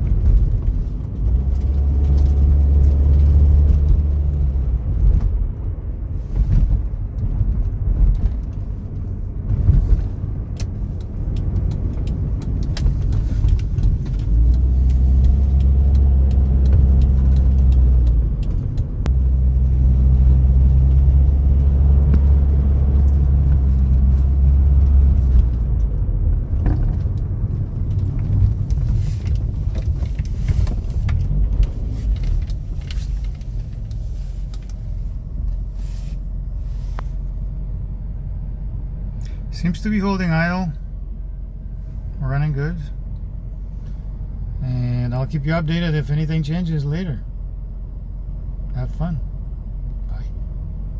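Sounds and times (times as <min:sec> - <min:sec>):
light clicks and rattles: 0:06.3 - 0:19.1, 0:21.6 - 0:35.8
car engine idling: 0:07.1 - 0:50.9.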